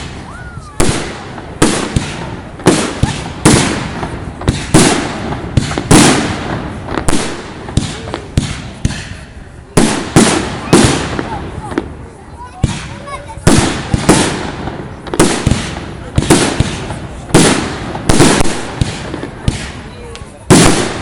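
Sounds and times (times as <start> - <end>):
echoing crackling tail: 0.0 - 21.0.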